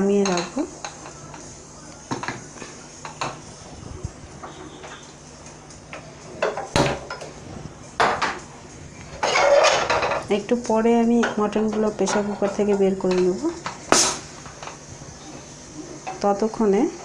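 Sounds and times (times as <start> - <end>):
metal cookware clanking: 9.2 - 10.5, 11.1 - 17.0.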